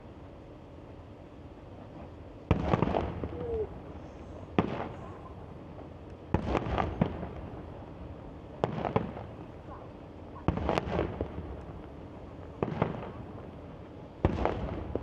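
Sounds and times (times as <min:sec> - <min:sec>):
fireworks crackling pops: 0:01.8 - 0:15.0
firework bangs: 0:02.5 - 0:03.7, 0:04.5 - 0:05.1, 0:06.3 - 0:07.6, 0:08.6 - 0:09.4, 0:10.4 - 0:11.6, 0:12.5 - 0:13.3, 0:14.2 - 0:15.0.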